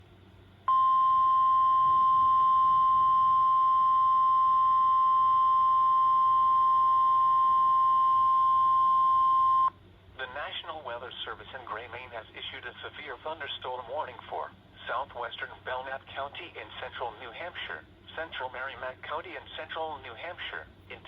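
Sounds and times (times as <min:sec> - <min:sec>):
steady high alarm beep: 0:00.7 - 0:09.7.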